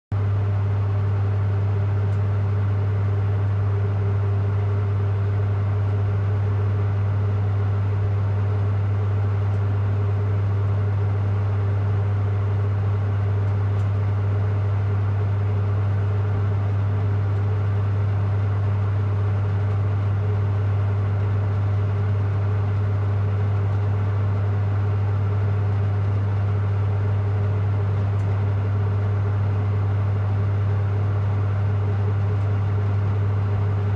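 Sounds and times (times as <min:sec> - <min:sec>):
generator humming: 0:00.1 - 0:33.9.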